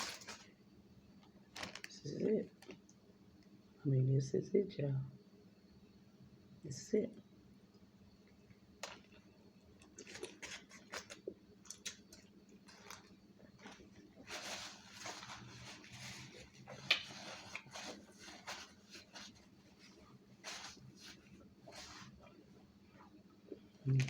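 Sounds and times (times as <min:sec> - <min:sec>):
close-up chewing: 0:08.8 - 0:23.8.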